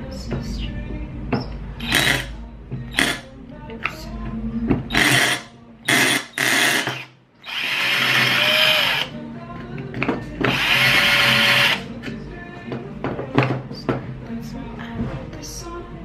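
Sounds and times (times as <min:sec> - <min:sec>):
faint drill whine: 0:01.8 - 0:02.3, 0:04.9 - 0:09.1, 0:10.5 - 0:11.8
power drill boring: 0:01.8 - 0:02.3, 0:02.9 - 0:03.2, 0:04.9 - 0:09.1, 0:10.4 - 0:11.9.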